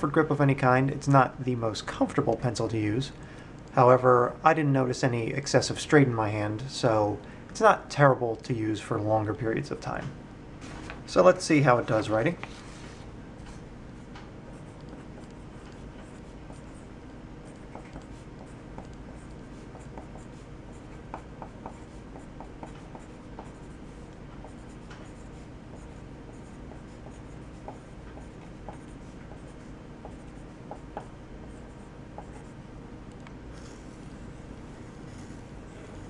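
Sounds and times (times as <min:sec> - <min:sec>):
low background hum: 0:00.0 - 0:36.0
pencil scratching on paper: 0:14.5 - 0:32.6, 0:33.5 - 0:36.0.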